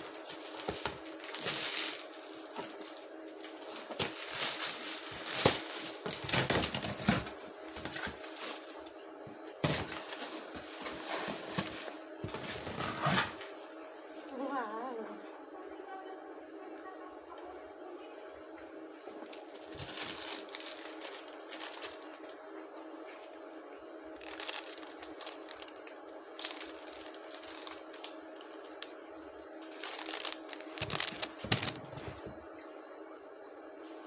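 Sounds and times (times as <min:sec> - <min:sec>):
plastic packaging crinkling: 0:00.0 - 0:08.9, 0:19.2 - 0:22.5, 0:24.2 - 0:32.4
steady hum: 0:00.0 - 0:34.0.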